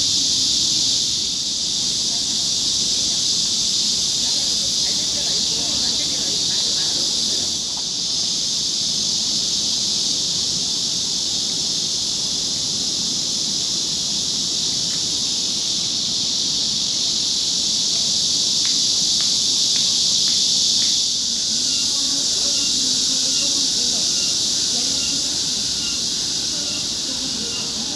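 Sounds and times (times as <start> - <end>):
cicadas buzzing: 0.0 - 27.9
faint ticks: 18.6 - 21.0.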